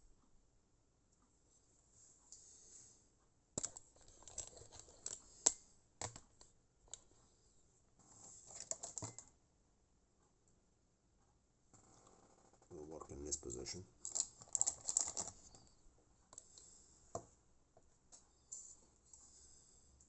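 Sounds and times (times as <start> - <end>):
small hard objects clicking: 3.6 - 7.0, 14.0 - 15.6.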